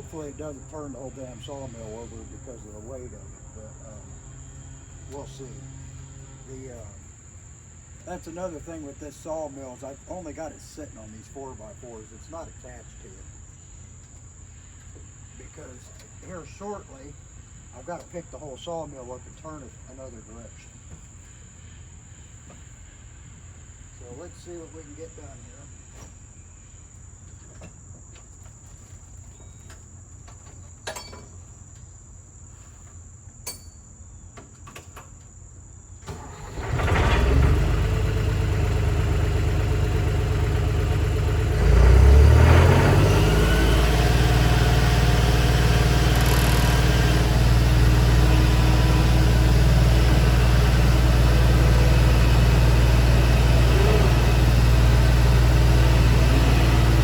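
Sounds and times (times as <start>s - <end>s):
diesel engine starting and running: 0.0s - 10.7s, 36.0s - 57.0s.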